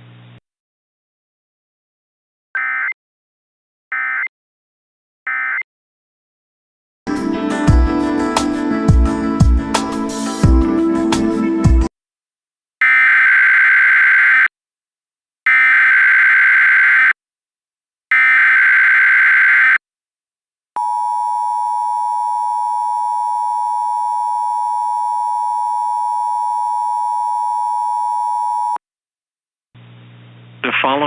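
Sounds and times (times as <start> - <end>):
steady high alarm tone: 20.8 - 28.8.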